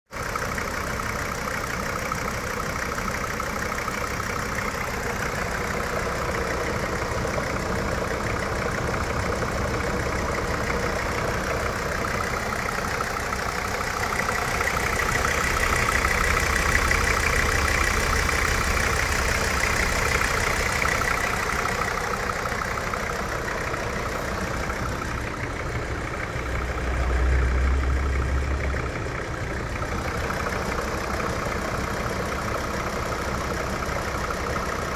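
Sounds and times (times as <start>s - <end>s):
engine idling with knock: 0.1s - 34.9s.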